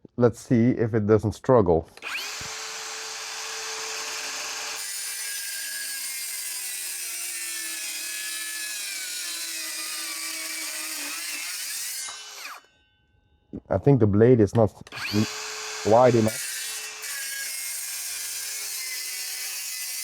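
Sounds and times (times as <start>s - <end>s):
circular saw cutting wood: 2.0s - 12.8s, 14.9s - 20.0s.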